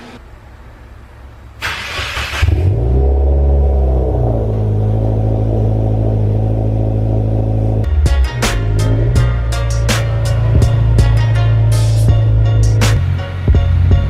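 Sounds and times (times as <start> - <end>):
car engine starting and idling: 0.0 - 14.0.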